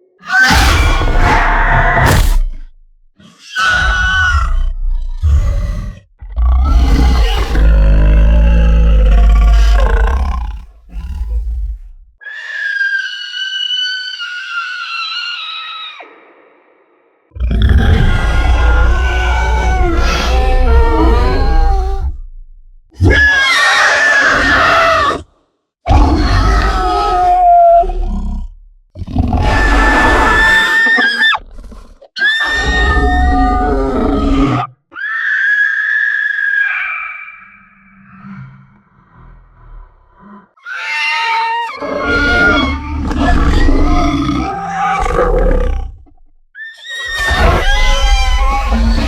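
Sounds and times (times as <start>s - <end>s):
creature roar: 0.2s - 2.6s, 3.4s - 13.6s, 17.4s - 22.3s, 23.0s - 49.0s
monster growl: 0.3s - 2.7s, 3.6s - 12.0s, 17.4s - 22.4s, 41.8s - 46.2s, 47.0s - 49.0s
deep rumbling roar: 3.7s - 12.2s, 17.4s - 23.3s, 47.1s - 49.0s.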